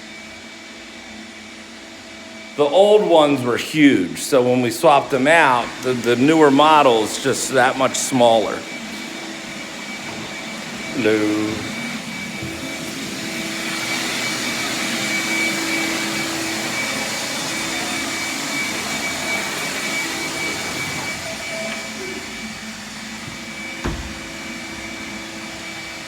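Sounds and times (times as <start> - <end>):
vacuum cleaner running: 0.0 - 26.0
knock: 23.8 - 24.2.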